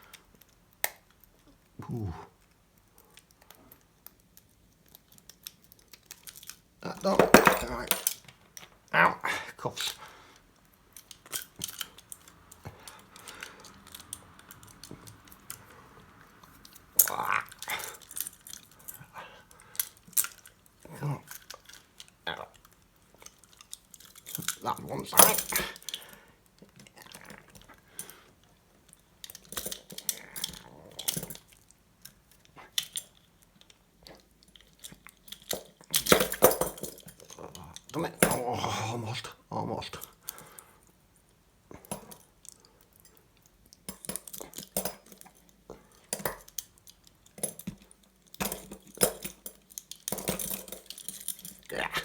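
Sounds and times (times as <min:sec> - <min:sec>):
metallic clicks on handcuffs: 0:00.1 - 0:08.8, 0:09.8 - 0:38.6, 0:41.7 - 0:52.0
lock pick clicking and scraping: 0:29.2 - 0:38.4, 0:43.7 - 0:51.7.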